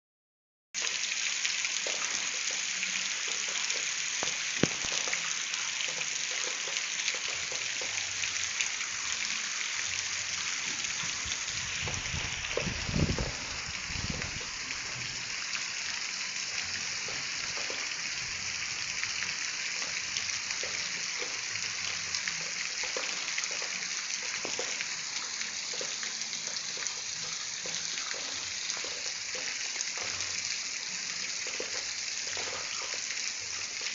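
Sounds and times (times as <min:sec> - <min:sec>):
heavy rain: 0:00.8 - 0:33.9
drops ticking on surfaces: 0:03.3 - 0:05.2.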